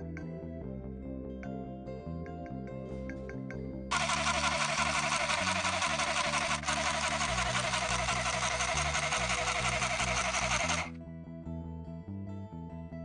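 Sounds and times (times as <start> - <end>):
background music: 0.0 - 13.0
electric sewing machine running: 3.9 - 10.9.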